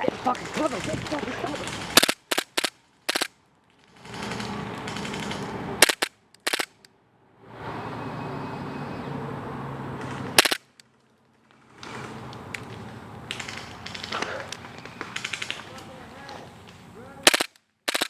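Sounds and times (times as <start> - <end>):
airsoft guns firing: 0.4 - 3.3, 4.0 - 6.8, 10.4 - 10.7, 13.3 - 16.0, 17.2 - 18.0.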